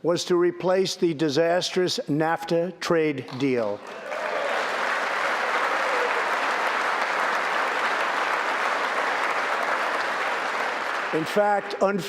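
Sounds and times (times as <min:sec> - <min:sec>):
audience applauding: 0:03.8 - 0:11.8
faint cheers: 0:03.9 - 0:07.1.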